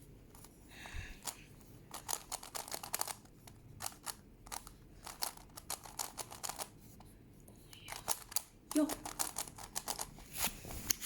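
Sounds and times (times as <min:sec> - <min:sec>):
puzzle cube faces clicking: 0:01.2 - 0:06.7, 0:07.7 - 0:10.1.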